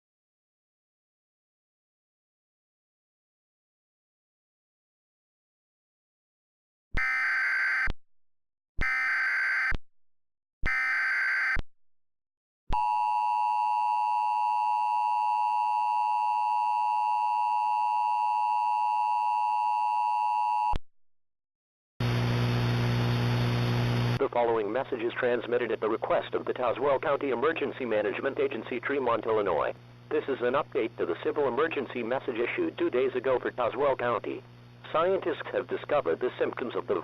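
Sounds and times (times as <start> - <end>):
low electrical hum: 22.0 - 37.0.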